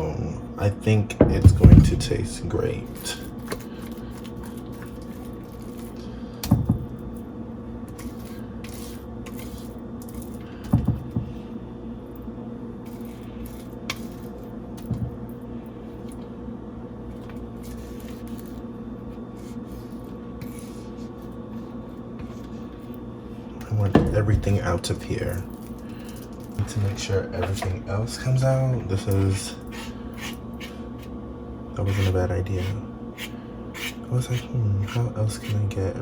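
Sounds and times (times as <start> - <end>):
appliance hum: 0.0 - 36.0
dull knocks: 1.2 - 2.4
spatula scraping bowl: 7.9 - 10.4, 17.2 - 22.9, 29.0 - 31.1, 31.8 - 35.8.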